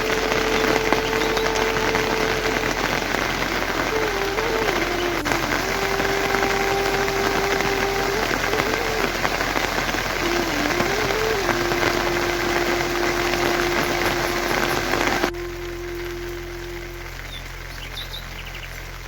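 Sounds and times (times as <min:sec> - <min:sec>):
heavy rain pouring: 0:00.0 - 0:19.0
thin held tone changing pitch: 0:10.2 - 0:19.0.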